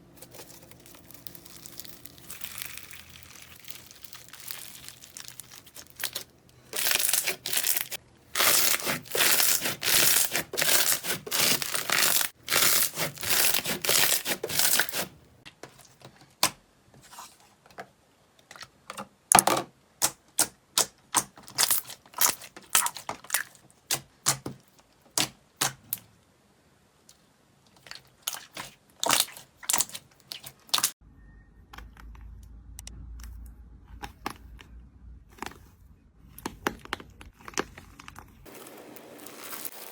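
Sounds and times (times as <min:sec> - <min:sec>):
slime crackling and tearing: 0:00.2 - 0:15.1, 0:21.1 - 0:24.4, 0:27.8 - 0:31.0.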